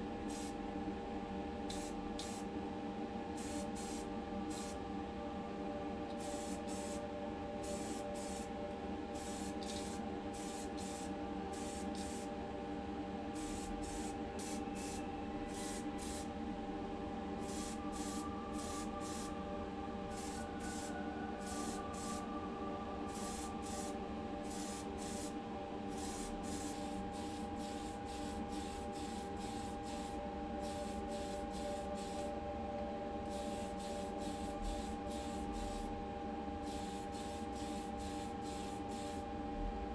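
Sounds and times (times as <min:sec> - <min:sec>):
steady motor hum: 0:00.0 - 0:39.9
paint spray hissing bursts: 0:00.3 - 0:00.5, 0:01.7 - 0:02.4, 0:03.4 - 0:04.8, 0:06.2 - 0:07.0, 0:07.6 - 0:08.5, 0:09.2 - 0:12.3, 0:13.4 - 0:16.3, 0:17.4 - 0:19.3, 0:20.2 - 0:22.2, 0:23.1 - 0:25.3, 0:25.9 - 0:32.2, 0:33.3 - 0:35.9, 0:36.6 - 0:39.2.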